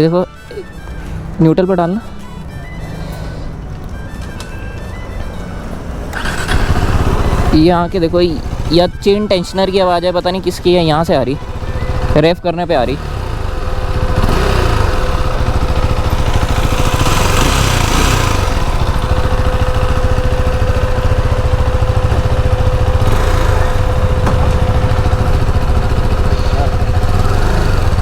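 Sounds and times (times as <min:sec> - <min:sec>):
motorcycle engine idling: 0:05.8 - 0:28.0
engine rattle: 0:06.0 - 0:28.0.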